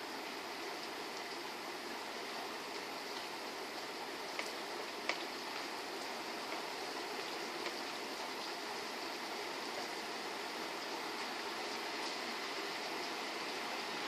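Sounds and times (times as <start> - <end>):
steady rain hiss: 0.0 - 14.0
raindrop ticks: 4.3 - 8.6.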